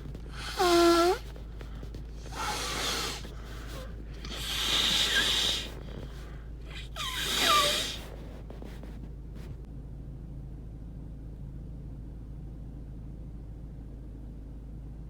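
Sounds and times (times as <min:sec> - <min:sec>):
congested nose blowing into tissue: 0:00.0 - 0:08.9.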